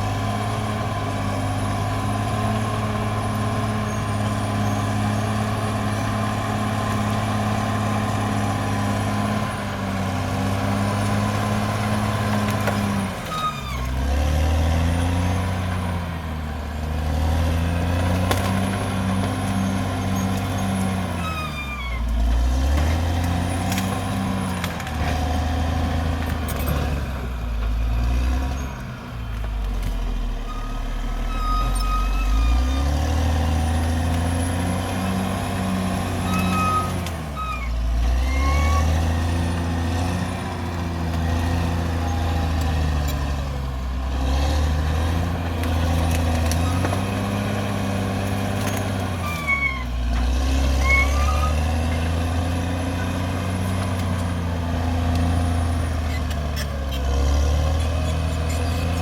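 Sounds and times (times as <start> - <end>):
bulldozer diesel engine under load: 0.0 - 59.0
machine squeals: 3.2 - 5.6, 13.2 - 13.9, 19.5 - 22.1, 30.4 - 33.8, 36.0 - 39.5, 46.0 - 47.2, 48.7 - 52.3, 55.4 - 59.0.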